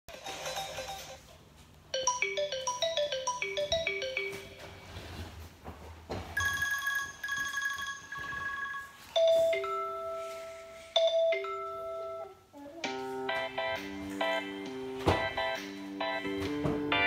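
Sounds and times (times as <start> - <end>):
rapid bell-like ringtone: 2.0 - 4.6, 6.4 - 12.1
electronic tone ringtone: 2.0 - 4.8, 6.4 - 12.4.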